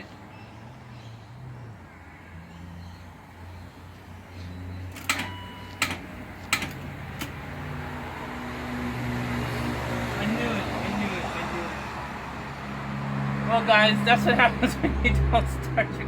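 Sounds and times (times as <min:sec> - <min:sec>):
car starter clicks: 0:04.9 - 0:07.4.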